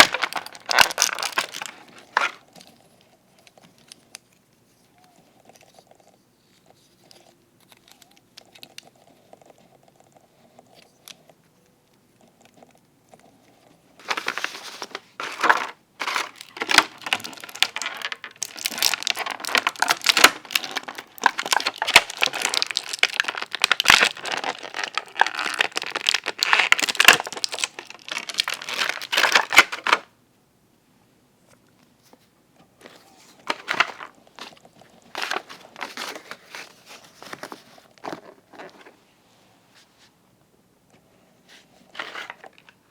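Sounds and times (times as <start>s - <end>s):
plastic packaging crinkling: 0.0s - 4.4s, 14.0s - 30.1s, 32.8s - 39.0s
faint handling sounds: 0.0s - 30.0s, 31.4s - 42.9s.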